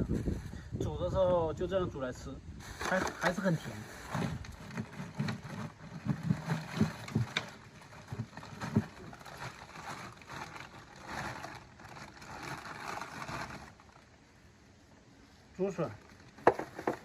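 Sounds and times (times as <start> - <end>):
plastic bags rustling: 2.6 - 14.1.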